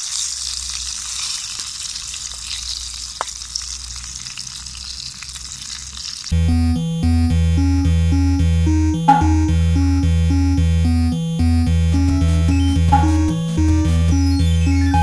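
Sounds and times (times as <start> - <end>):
sausages sizzling in a pan: 0.0 - 6.3
music: 6.4 - 15.0.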